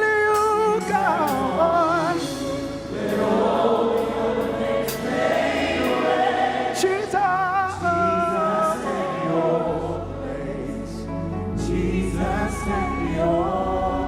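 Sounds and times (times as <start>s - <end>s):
keyboard chords: 0.0s - 14.0s
voices singing along: 0.7s - 14.0s
person singing with vibrato: 6.8s - 14.0s
bass line: 9.7s - 14.0s.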